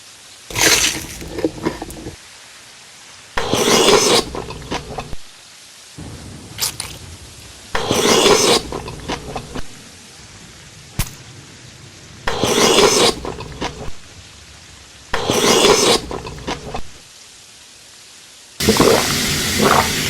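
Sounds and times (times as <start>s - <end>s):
chewing crunches: 0.5s - 2.2s, 3.4s - 5.2s, 7.8s - 9.7s, 12.3s - 14.0s, 15.2s - 17.0s
crunchy food bites: 0.5s - 2.2s.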